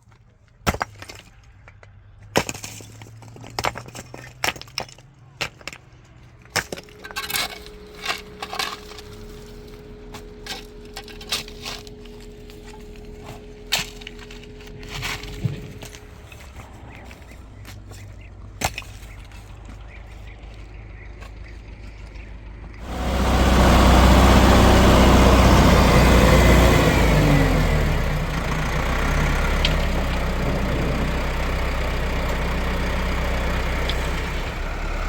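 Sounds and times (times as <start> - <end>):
motor hum: 6.5 - 17.9, 19.5 - 35.0.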